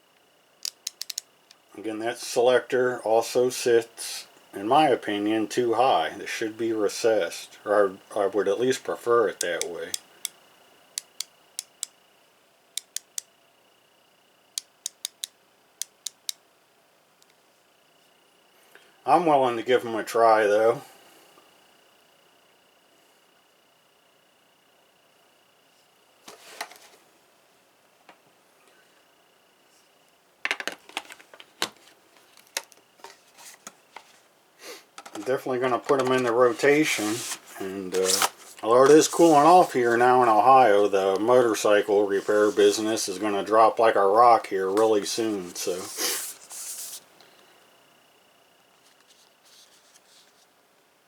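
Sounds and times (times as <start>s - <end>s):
ratchet wrench clicking: 0.6s - 1.3s.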